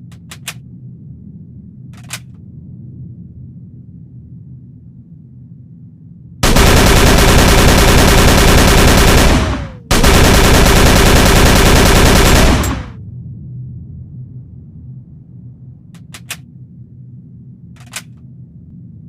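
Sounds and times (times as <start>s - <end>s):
submachine gun automatic fire: 6.4s - 13.0s.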